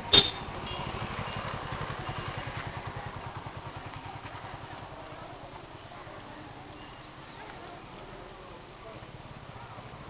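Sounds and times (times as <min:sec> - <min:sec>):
small engine idling: 0:00.2 - 0:08.0.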